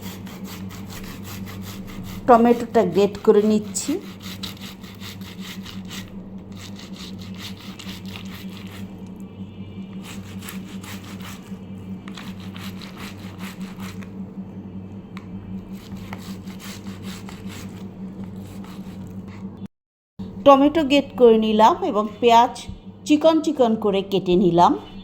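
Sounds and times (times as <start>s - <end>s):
tomato rasping on metal grater: 0.0s - 9.0s, 9.9s - 14.1s, 15.7s - 19.3s
low hum: 5.6s - 25.0s.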